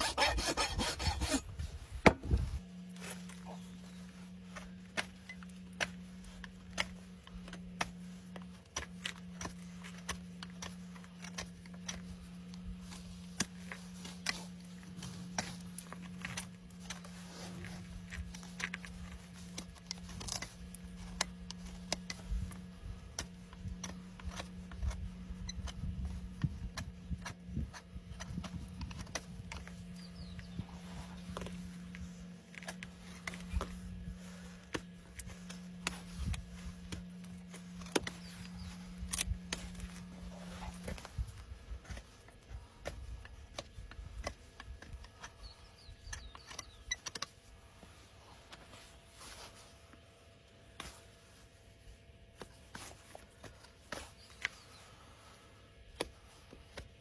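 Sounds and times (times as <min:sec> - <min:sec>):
trimming tools clicking on hoof: 0:00.0 - 0:01.6, 0:04.6 - 0:47.4
steady low hum: 0:00.0 - 0:57.0.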